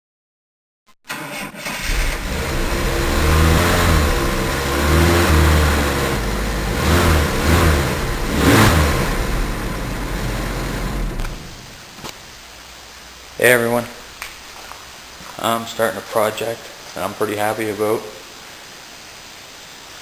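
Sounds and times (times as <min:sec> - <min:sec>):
car engine starting and revving: 0:01.1 - 0:11.8.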